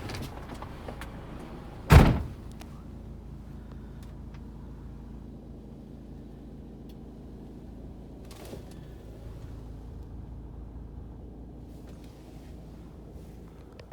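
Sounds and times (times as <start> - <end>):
diesel truck engine idling: 0.0 - 8.1.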